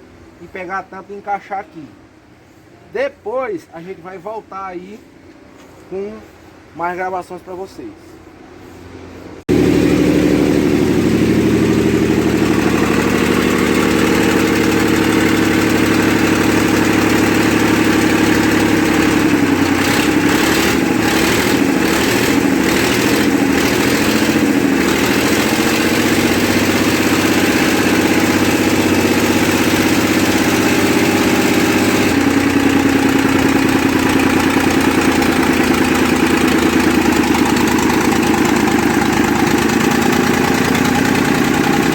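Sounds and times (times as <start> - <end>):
diesel engine running: 8.5 - 41.9.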